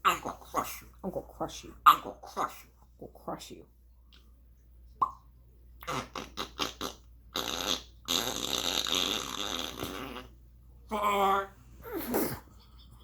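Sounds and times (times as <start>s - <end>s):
parrot making fart sounds: 5.8s - 10.4s, 11.8s - 12.4s.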